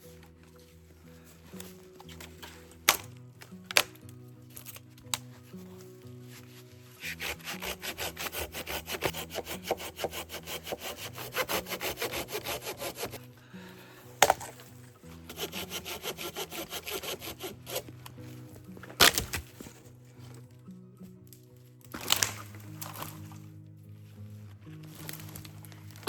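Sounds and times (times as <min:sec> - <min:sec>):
hand saw cutting wood: 0:07.0 - 0:13.3, 0:15.2 - 0:17.9.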